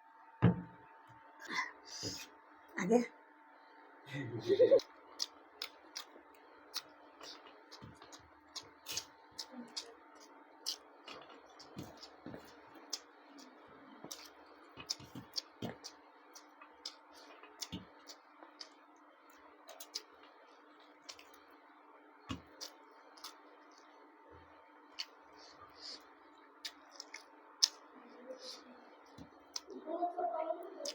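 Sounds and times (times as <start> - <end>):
faint steady hum: 0.0 - 30.9
person chewing wetly: 4.8 - 21.5, 22.3 - 23.9, 24.9 - 29.7.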